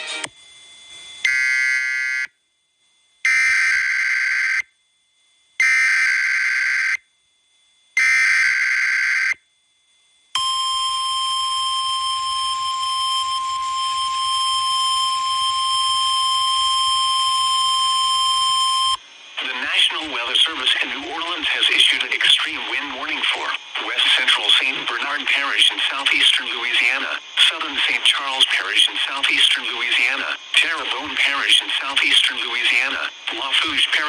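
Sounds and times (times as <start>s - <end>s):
steady single-pitched attention tone: 10.4s - 19.0s
harsh digital data noise bursts: 10.8s - 34.0s.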